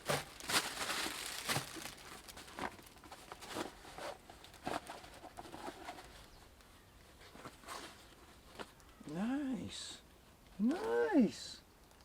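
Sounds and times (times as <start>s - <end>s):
bag rustling and crinkling: 0.0s - 6.4s.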